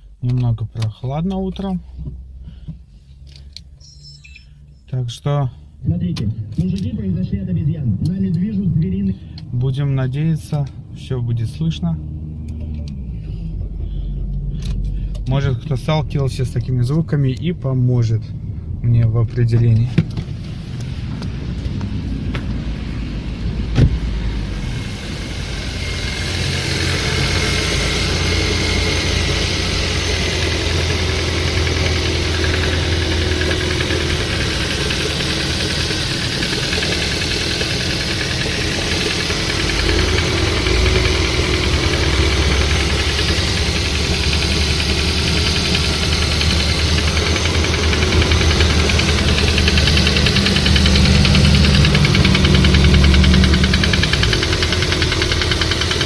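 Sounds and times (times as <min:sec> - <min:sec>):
engine running with knocking: 0:19.9 - 0:56.0.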